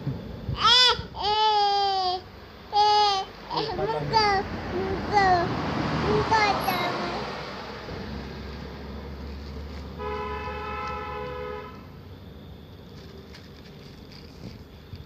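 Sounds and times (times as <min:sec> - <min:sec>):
vehicle engine rumble: 0:03.3 - 0:15.0
vehicle horn chord: 0:10.0 - 0:11.9.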